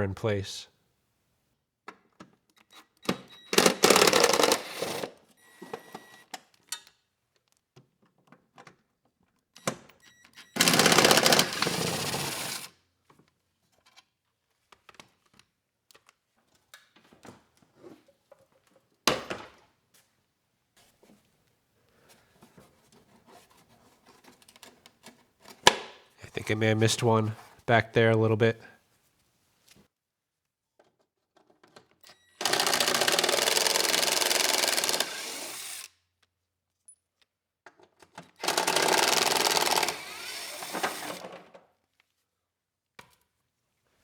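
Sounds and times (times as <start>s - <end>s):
power driver spinning bolts: 32.4s - 35.8s.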